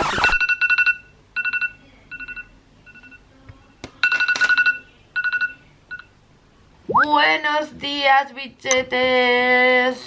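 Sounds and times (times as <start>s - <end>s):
electronic alarm beeping: 0.0s - 3.2s.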